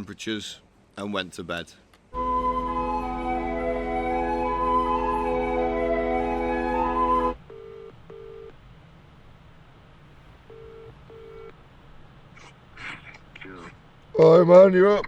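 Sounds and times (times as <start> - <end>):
telephone ringing tone: 6.7 - 8.5, 10.5 - 11.6.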